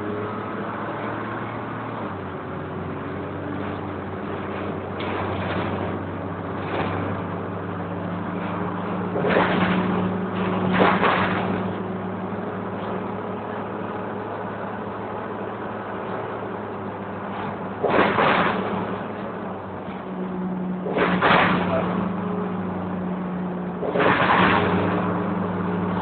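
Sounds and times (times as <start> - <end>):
bus engine drone and whine: 0.0 - 26.0
loud rattles: 9.1 - 11.8, 17.3 - 19.2, 20.8 - 22.1, 23.8 - 25.1.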